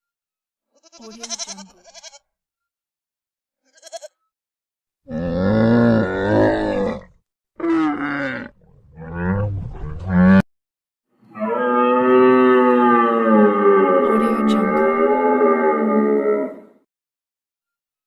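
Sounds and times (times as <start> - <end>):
animal bleat: 0.7 - 2.3, 3.6 - 4.3, 11.3 - 16.6
large animal calling: 11.3 - 16.7.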